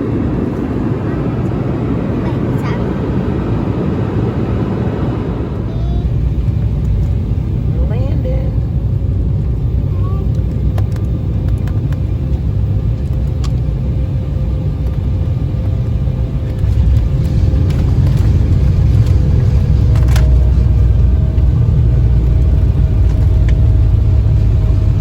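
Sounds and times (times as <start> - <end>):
airflow: 0.0 - 5.7
jet engine rumble: 0.0 - 25.0.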